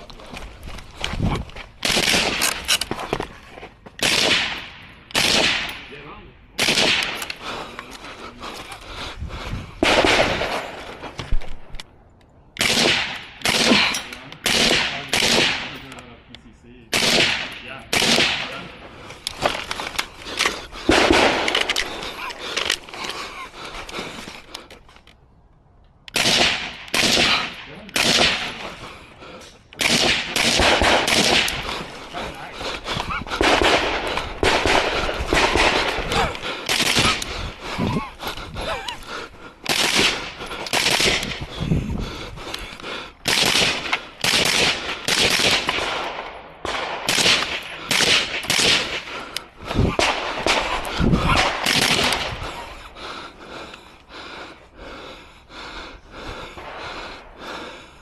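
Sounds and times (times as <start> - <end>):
rifle shots: 1.8 - 2.8, 4.0 - 5.9, 6.6 - 7.3, 9.8 - 11.0, 12.6 - 16.0, 16.9 - 18.8, 19.4 - 22.6, 26.1 - 28.8, 29.8 - 32.3, 33.3 - 37.4, 39.7 - 41.4, 43.2 - 52.4.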